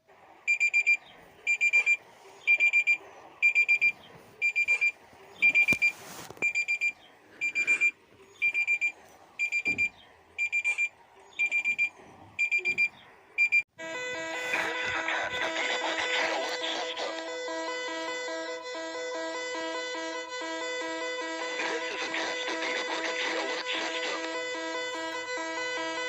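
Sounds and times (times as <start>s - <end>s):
electronic alarm beeping: 0.5s - 15.4s.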